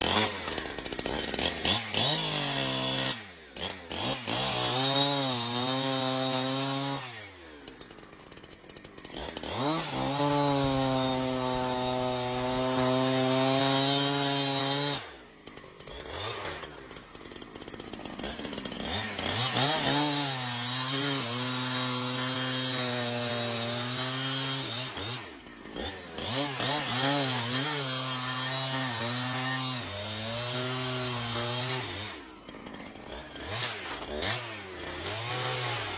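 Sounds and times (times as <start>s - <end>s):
chainsaw cutting wood: 0.0s - 35.9s.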